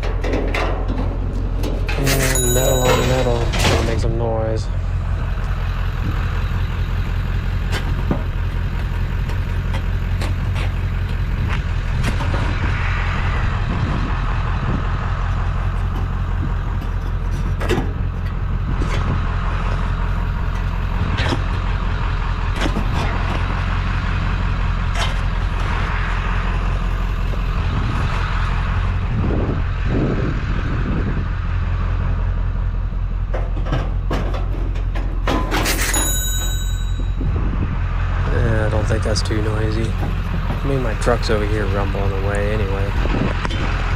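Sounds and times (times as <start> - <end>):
scrap metal clanking: 0.0 - 4.1, 33.4 - 37.1
truck engine idling: 0.0 - 43.9.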